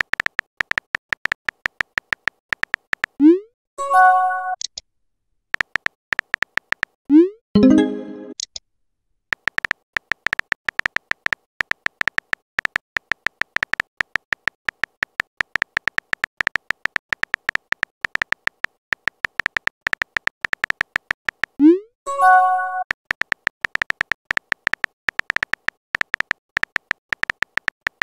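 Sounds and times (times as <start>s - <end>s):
typing sound effect beeps: 20.6s - 27.8s.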